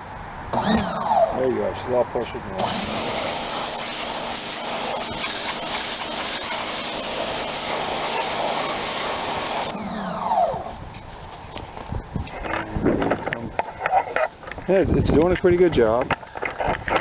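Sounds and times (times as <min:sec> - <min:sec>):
falling motor whine: 0:00.5 - 0:01.4, 0:02.6 - 0:10.8
pressure washer motor hum: 0:00.5 - 0:01.4, 0:02.5 - 0:10.8
pressure washer water jet hissing: 0:02.5 - 0:10.8.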